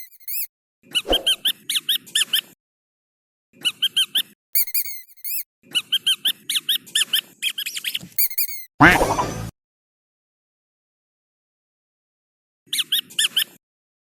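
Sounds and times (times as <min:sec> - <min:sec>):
squeaky dog toy squeaking: 0:00.0 - 0:00.5, 0:03.8 - 0:05.4, 0:07.6 - 0:09.3.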